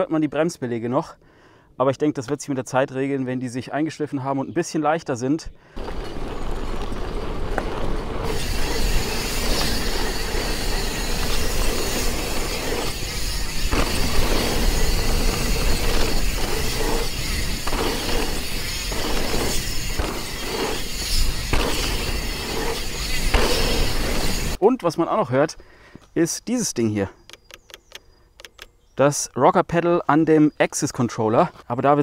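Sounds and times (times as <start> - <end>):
bike tyre and wind noise: 5.7 - 24.6.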